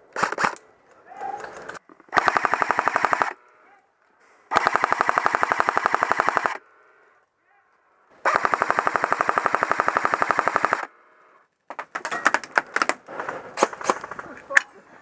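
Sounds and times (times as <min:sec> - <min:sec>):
airsoft gun firing full auto: 0:02.1 - 0:03.4, 0:04.5 - 0:06.6, 0:08.2 - 0:10.9.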